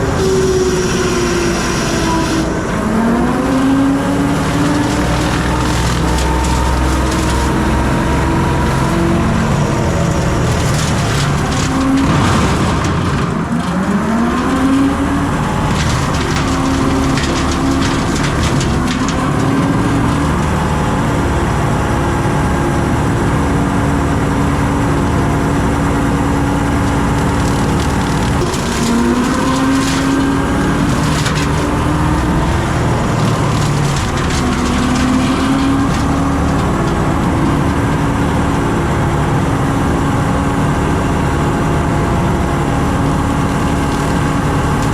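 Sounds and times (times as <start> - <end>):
hydraulic brush cutter whine: 0.0 - 21.9, 26.6 - 40.4
diesel engine running: 0.0 - 44.9
brush crackling as cut: 3.8 - 14.9, 27.2 - 37.5.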